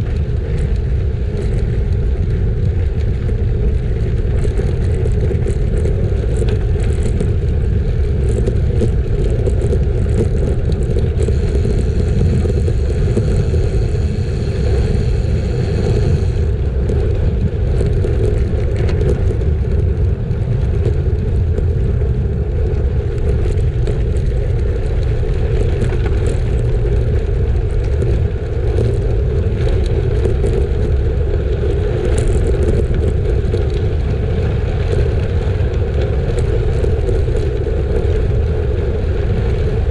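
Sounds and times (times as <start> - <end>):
bike tyre noise: 0.0 - 39.9
wind on microphone: 0.0 - 39.9
faint high whine: 11.2 - 16.6.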